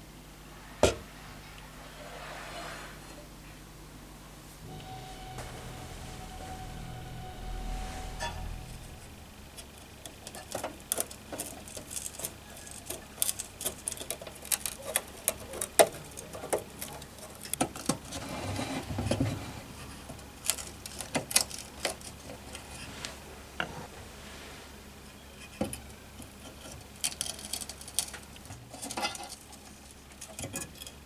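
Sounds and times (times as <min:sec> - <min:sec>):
low rumble: 0:04.6 - 0:10.9.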